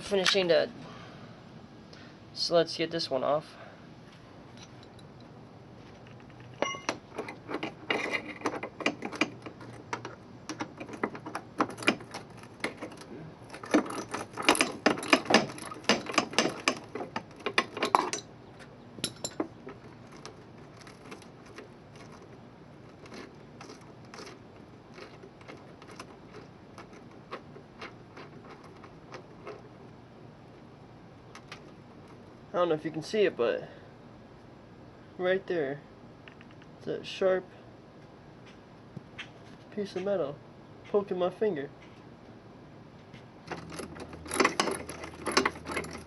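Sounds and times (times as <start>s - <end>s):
metal hand tools clinking: 6.3s - 18.3s, 19.0s - 21.4s, 43.6s - 46.0s.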